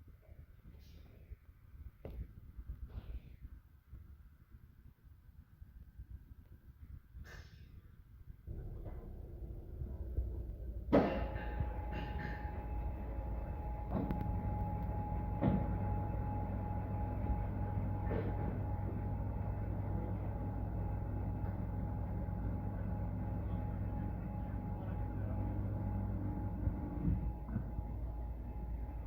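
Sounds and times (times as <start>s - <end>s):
steady mechanical drone: 8.4s - 29.0s
sharp knocks: 10.9s - 12.9s.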